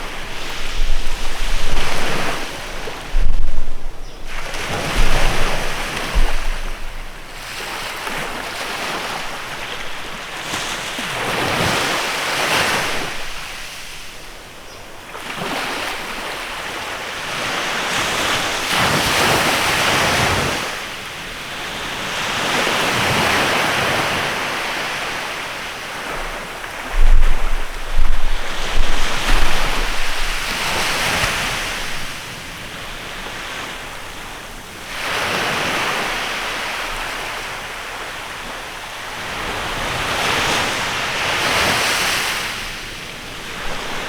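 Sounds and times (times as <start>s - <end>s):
wind buffeting microphone: 0.0s - 15.8s, 25.8s - 34.4s
small waves washing onto beach: 0.0s - 44.0s.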